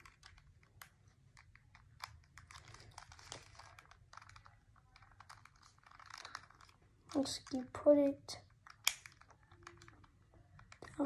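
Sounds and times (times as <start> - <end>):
small plastic clicks: 0.0 - 11.0
packaging crinkling: 1.4 - 7.2.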